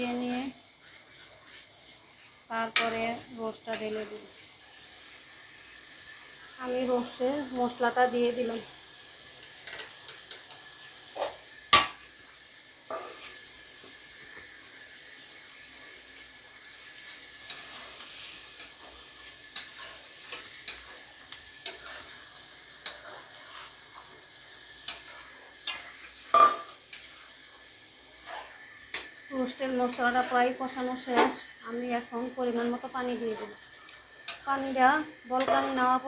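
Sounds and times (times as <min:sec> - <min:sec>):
spatula scraping a pot: 0:00.0 - 0:05.2, 0:15.2 - 0:31.5
spices sizzling in oil: 0:00.0 - 0:36.0.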